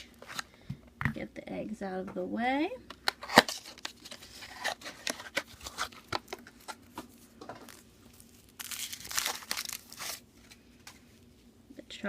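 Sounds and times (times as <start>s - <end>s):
foil wrapper crinkling and tearing: 3.3s - 10.6s.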